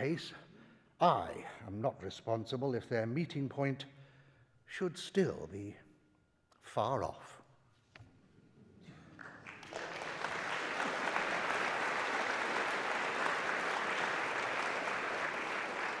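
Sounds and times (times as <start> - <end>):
audience applauding: 9.1 - 16.0.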